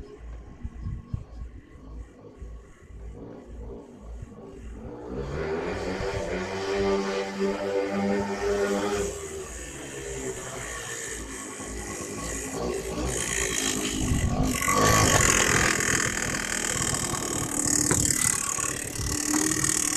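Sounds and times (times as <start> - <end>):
scooter engine knocking: 11.7 - 19.9.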